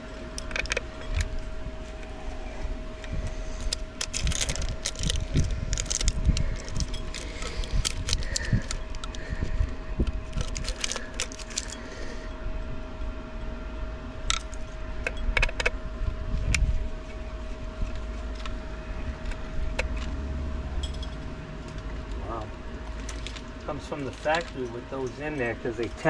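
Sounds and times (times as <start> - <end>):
hands rustling and clicking parts: 0.0 - 2.2, 3.0 - 12.1, 14.3 - 15.8, 17.8 - 20.2, 20.8 - 26.0
faint steady hum: 0.0 - 26.0.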